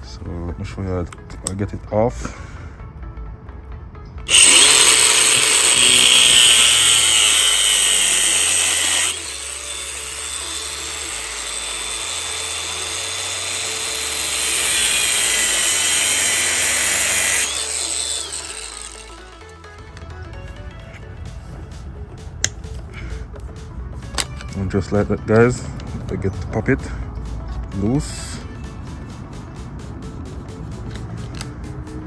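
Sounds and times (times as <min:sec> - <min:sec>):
angle grinder cutting metal: 0:04.3 - 0:20.0.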